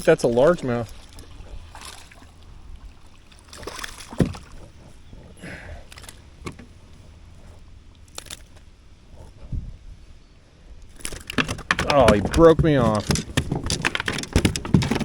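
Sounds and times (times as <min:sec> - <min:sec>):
knocks and thumps in a boat: 0:00.0 - 0:09.8, 0:10.9 - 0:15.0
steady low rumble: 0:00.0 - 0:11.1.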